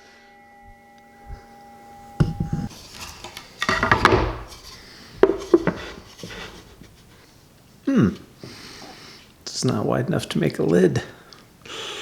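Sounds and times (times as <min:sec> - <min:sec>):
hard objects knocking on workbench: 0:02.2 - 0:02.7, 0:03.6 - 0:06.4.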